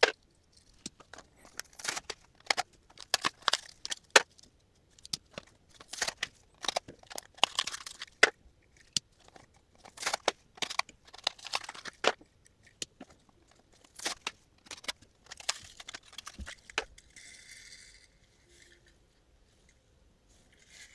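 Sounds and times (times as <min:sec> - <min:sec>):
packaging crinkling and tearing: 0:00.0 - 0:04.3, 0:05.0 - 0:08.3, 0:09.2 - 0:12.2, 0:13.0 - 0:16.9.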